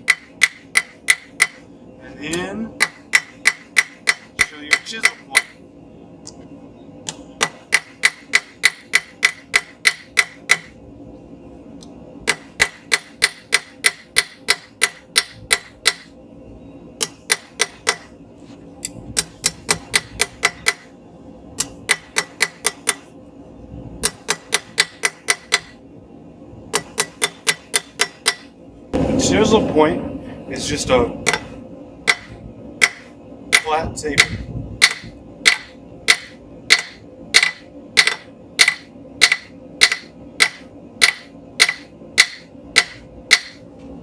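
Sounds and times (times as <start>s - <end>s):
hammer striking steel on anvil: 0.0s - 1.6s, 2.8s - 5.6s, 7.4s - 10.7s, 12.3s - 16.1s, 17.0s - 18.1s, 19.2s - 20.9s, 21.6s - 23.0s, 24.0s - 25.8s, 26.8s - 28.5s, 31.2s - 43.6s.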